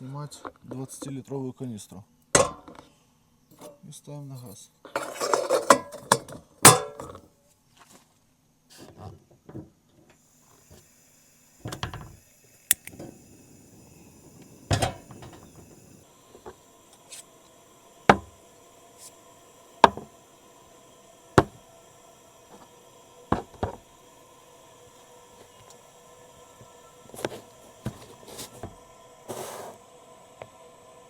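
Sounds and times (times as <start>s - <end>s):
faint steady hiss: 0.0s - 31.0s.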